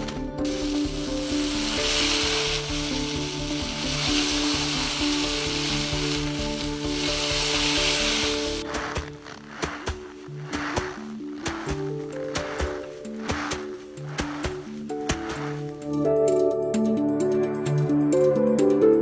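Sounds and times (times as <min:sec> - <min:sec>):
sizzling crackling hiss: 0:00.0 - 0:15.9
background music: 0:00.0 - 0:19.0.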